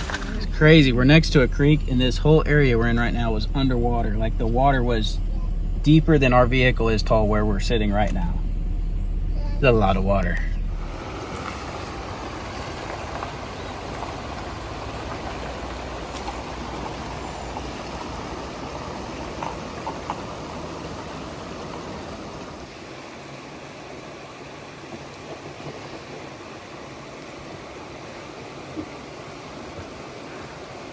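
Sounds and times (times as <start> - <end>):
vehicle engine rumble: 0.0 - 30.9
steady rushing hiss: 10.7 - 30.9.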